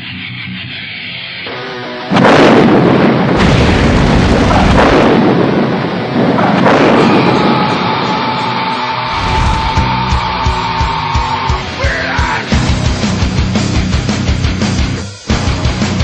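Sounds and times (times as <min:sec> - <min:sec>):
explosion blast: 0:02.1 - 0:11.5
heavy rumbling: 0:02.1 - 0:14.6.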